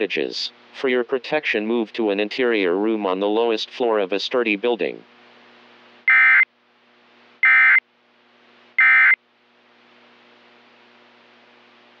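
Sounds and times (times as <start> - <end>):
faint hiss and hum: 0.0 - 12.0
digital data tone bursts: 6.1 - 6.4, 7.4 - 7.8, 8.8 - 9.2.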